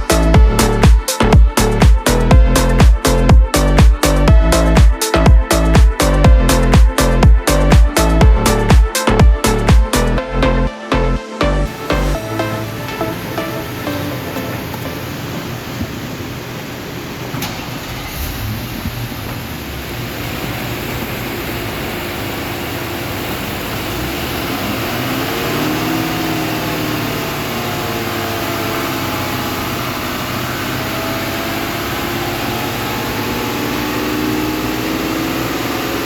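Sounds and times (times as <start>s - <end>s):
car engine running: 0.0s - 10.7s, 11.5s - 36.0s.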